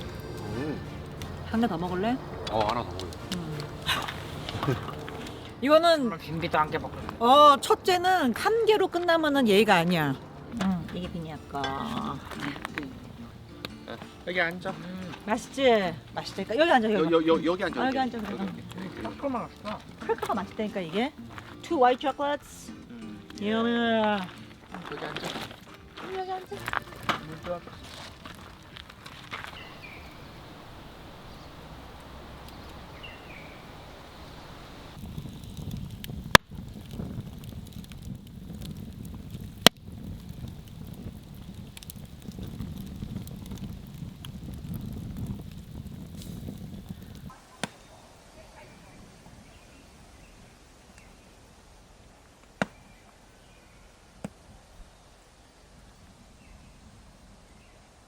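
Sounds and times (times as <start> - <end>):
campfire wood popping: 0.0 - 48.0, 52.3 - 54.6
bird chirp: 29.4 - 35.0.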